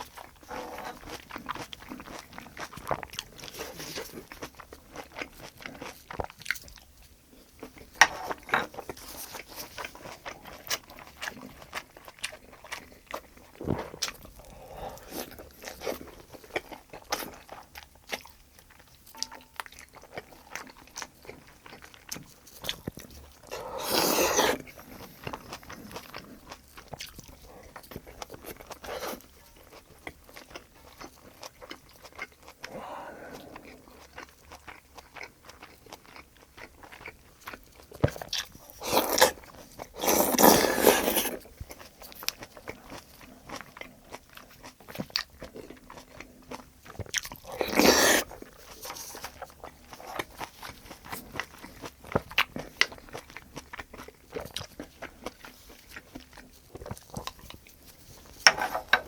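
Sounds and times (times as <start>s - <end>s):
wet chewing and crunching: 0.0s - 59.0s
noisy bites or slurps: 23.4s - 24.9s, 38.8s - 41.4s, 47.4s - 48.5s.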